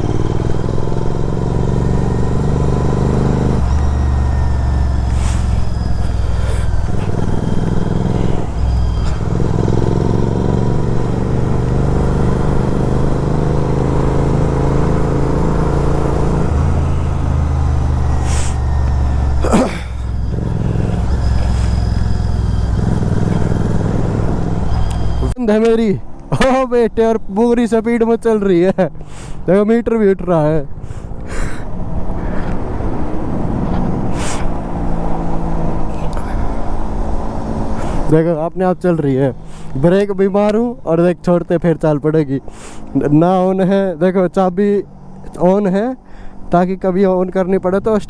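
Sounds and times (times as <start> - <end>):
motorcycle accelerating through gears: 0.0 - 25.4, 30.6 - 38.2, 39.3 - 40.6, 42.3 - 43.5, 44.6 - 46.6.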